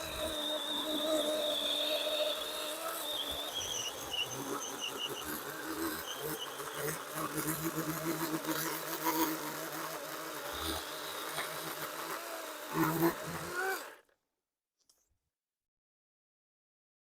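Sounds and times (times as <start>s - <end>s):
electric chainsaw cutting wood: 0.0s - 14.2s.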